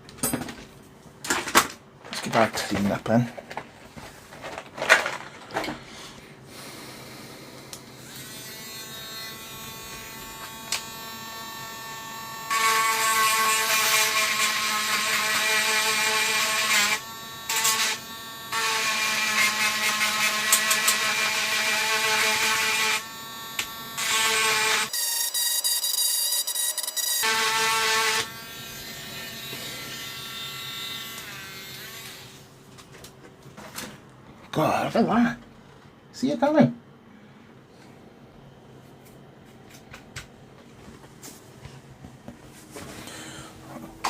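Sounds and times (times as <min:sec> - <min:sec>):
small electric tool motor whining: 0:08.0 - 0:32.4.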